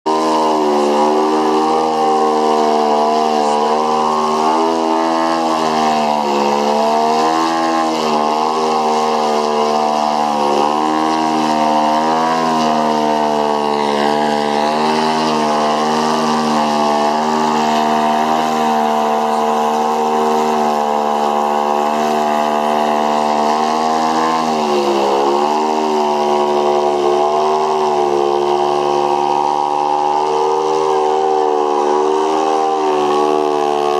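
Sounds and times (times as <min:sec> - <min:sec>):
model plane engine and propeller: 0:00.0 - 0:33.9.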